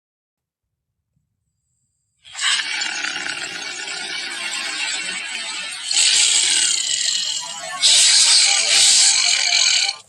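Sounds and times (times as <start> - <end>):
raspy monster roar: 2.3 - 10.0.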